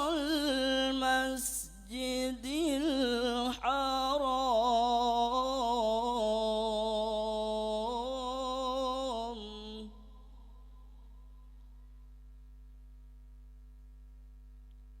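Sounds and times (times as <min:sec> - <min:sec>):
man chanting unaccompanied: 0:00.0 - 0:10.2.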